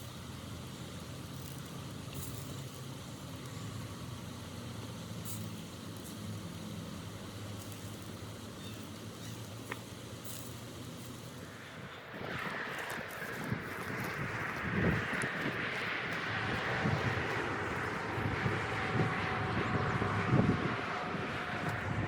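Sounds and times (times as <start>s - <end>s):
low engine hum: 0.0s - 22.0s
loud rushing noise: 11.5s - 22.0s.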